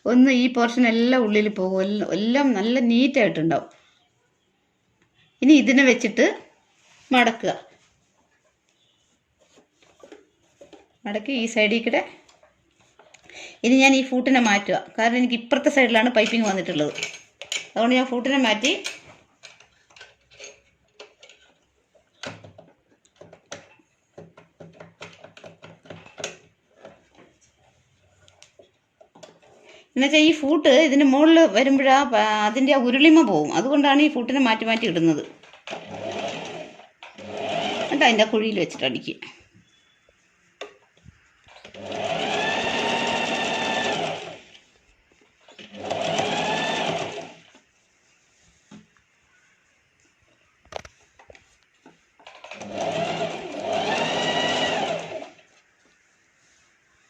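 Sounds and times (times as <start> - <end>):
metal sewing machine parts clicking: 16.2 - 17.8
sewing machine stitching: 35.4 - 38.3, 41.5 - 44.7, 45.5 - 47.5, 52.2 - 55.5.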